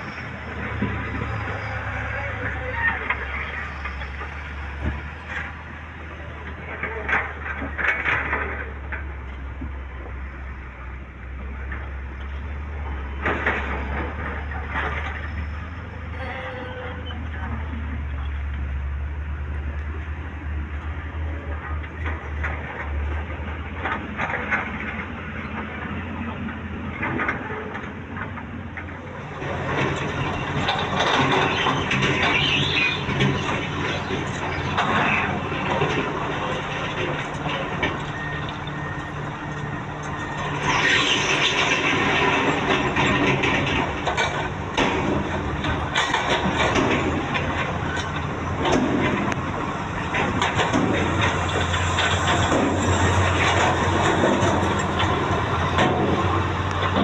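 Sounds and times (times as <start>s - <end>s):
excavator engine running: 0.0s - 57.0s
bursts of clatter: 21.6s - 57.0s.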